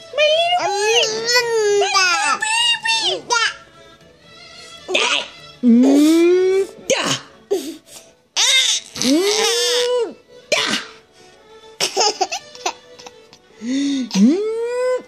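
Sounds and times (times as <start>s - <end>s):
person sneezing: 10.5s - 11.0s.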